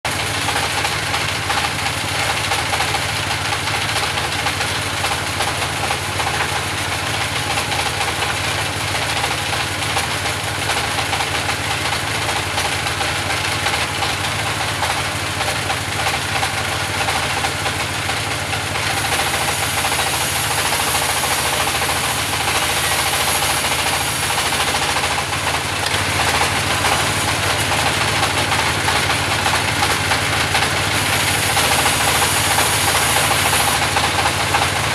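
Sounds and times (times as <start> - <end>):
sawmill machine drone: 0.1 - 34.9
saw hiss: 18.9 - 25.2, 30.9 - 34.0.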